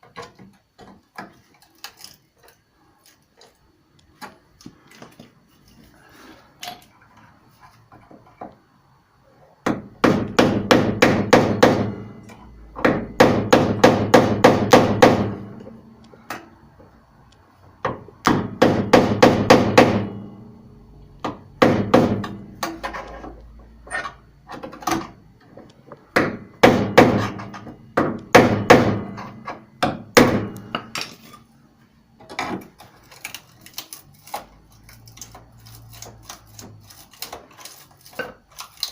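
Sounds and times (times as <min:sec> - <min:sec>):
hammer blows on sheet steel: 0:10.0 - 0:12.2, 0:12.9 - 0:15.6, 0:18.2 - 0:20.4, 0:26.2 - 0:30.9.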